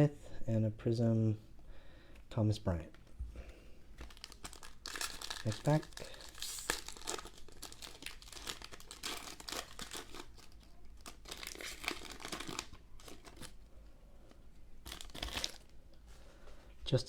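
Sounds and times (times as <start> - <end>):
card pack wrapper tearing and crinkling: 4.0 - 13.6, 14.8 - 15.7.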